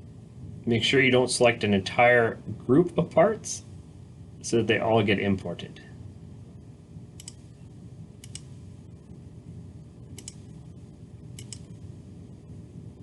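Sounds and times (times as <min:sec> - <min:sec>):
steady low background hum: 0:00.0 - 0:13.0
computer mouse clicks: 0:07.2 - 0:07.4, 0:08.2 - 0:08.5, 0:10.2 - 0:10.5, 0:11.4 - 0:11.8.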